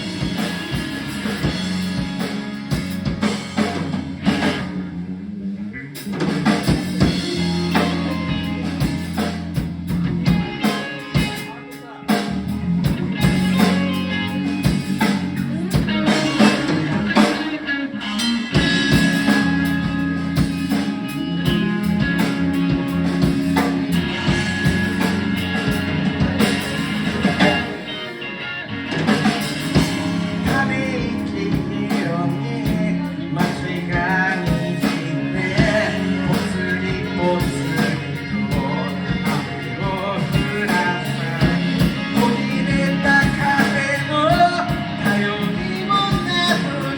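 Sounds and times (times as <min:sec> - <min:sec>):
drums: 0:00.0 - 0:46.9
guitar: 0:00.0 - 0:46.9
person singing: 0:07.0 - 0:09.3, 0:13.2 - 0:46.9.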